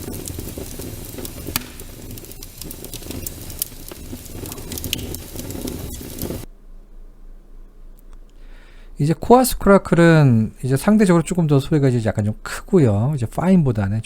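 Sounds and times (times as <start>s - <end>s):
lung crackles: 0.0s - 6.5s
breathing: 8.3s - 9.0s.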